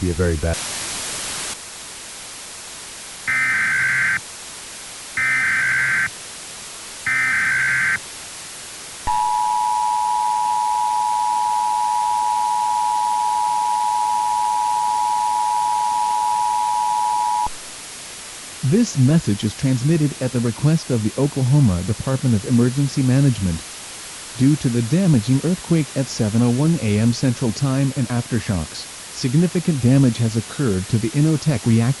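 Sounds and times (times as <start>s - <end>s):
faint hiss: 0.0s - 32.0s
digital data tone bursts: 3.3s - 4.2s, 5.2s - 6.1s, 7.1s - 8.0s
two-tone attention signal: 3.3s - 4.2s, 5.2s - 6.1s, 7.1s - 8.0s, 9.1s - 17.5s.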